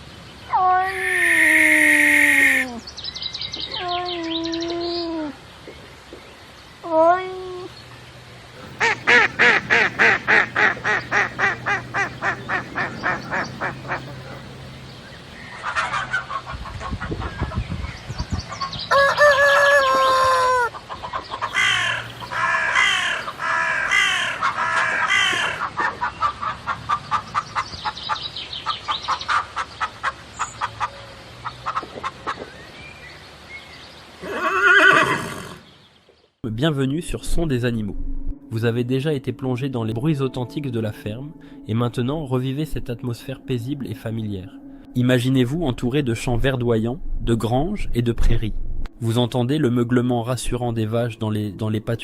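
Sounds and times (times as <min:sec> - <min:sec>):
farmyard fowl calling: 0:08.6 - 0:17.6, 0:18.5 - 0:32.5.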